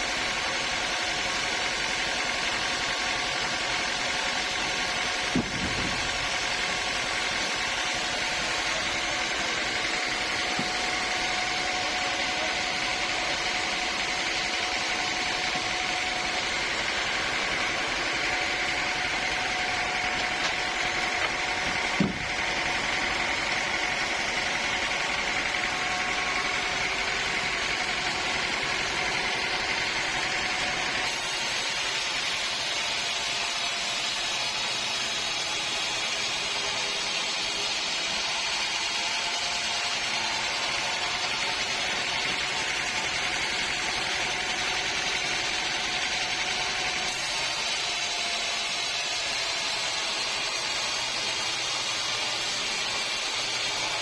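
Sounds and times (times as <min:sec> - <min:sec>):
sawmill machinery humming: 0:00.0 - 0:54.0
knock: 0:22.0 - 0:22.2.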